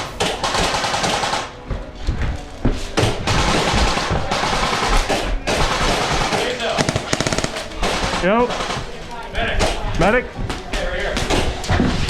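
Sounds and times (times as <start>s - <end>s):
airsoft guns firing: 6.2s - 8.4s.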